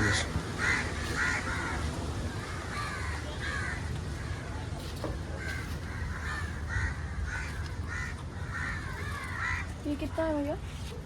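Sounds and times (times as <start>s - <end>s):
crows cawing: 0.0s - 4.4s, 5.4s - 9.8s.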